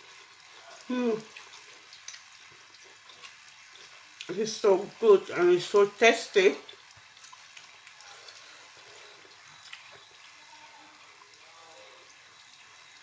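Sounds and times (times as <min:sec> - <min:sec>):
faint chewing and mouth clicks: 0:00.0 - 0:04.4, 0:06.6 - 0:11.4
low room hiss: 0:00.0 - 0:13.0.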